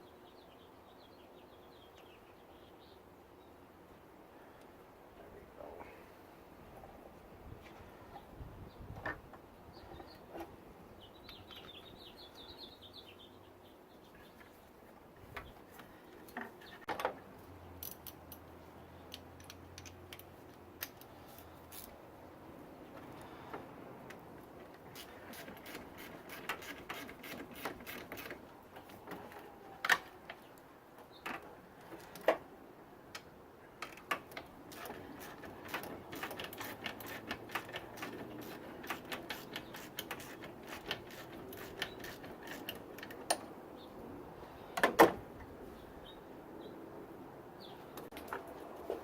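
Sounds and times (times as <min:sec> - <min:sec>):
hand tools clicking on metal: 0:24.1 - 0:28.4, 0:33.8 - 0:43.5.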